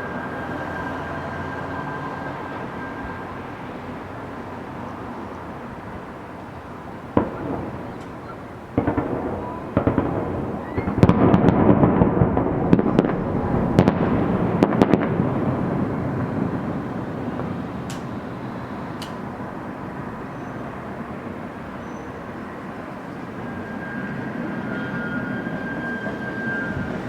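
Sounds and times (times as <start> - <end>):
fireworks bangs and crackling: 5.9 - 27.0
rolling rumble: 7.0 - 27.0
fireworks booms: 7.1 - 18.7.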